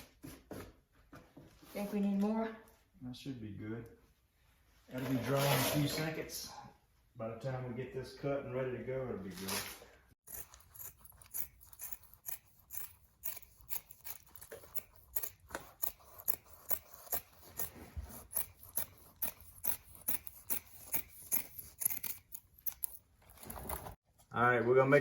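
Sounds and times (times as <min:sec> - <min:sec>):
scissors snipping fiberglass: 0:10.3 - 0:23.0.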